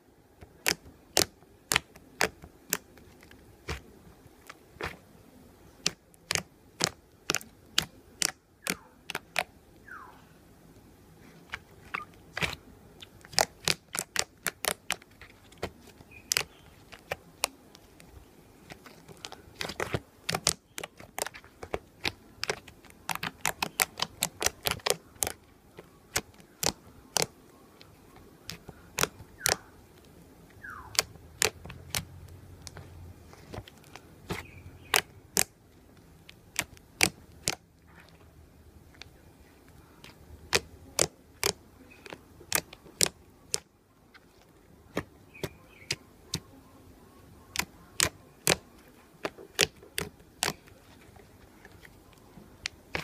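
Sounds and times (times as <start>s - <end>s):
slime crackling pops: 13.3s - 15.0s, 16.2s - 17.5s, 18.7s - 25.4s, 28.5s - 29.6s, 36.5s - 37.6s, 40.0s - 43.6s, 47.5s - 48.6s, 49.2s - 50.6s.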